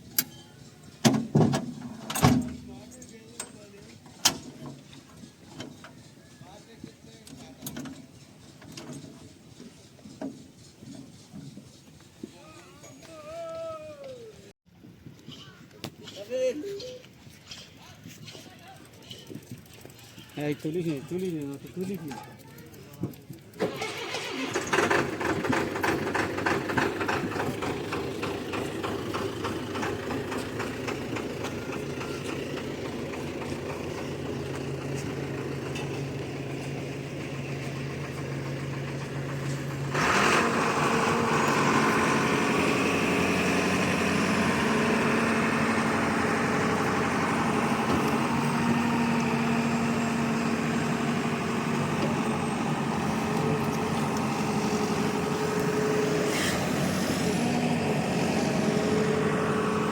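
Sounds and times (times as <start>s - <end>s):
diesel engine running with knock: 0.9s - 12.0s, 24.5s - 59.9s.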